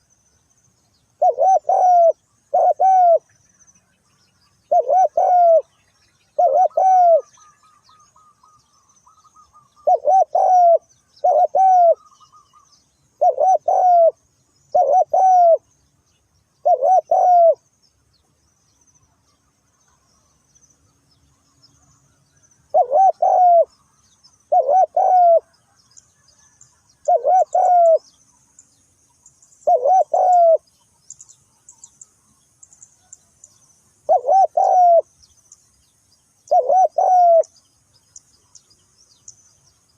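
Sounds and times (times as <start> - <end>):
small birds chirping: 0.0 - 39.9
dove cooing: 1.2 - 3.3, 4.7 - 5.7, 6.4 - 15.6, 16.6 - 17.6, 22.7 - 23.7, 24.4 - 25.5, 27.0 - 28.0, 29.6 - 30.7, 34.1 - 35.1, 36.5 - 37.5.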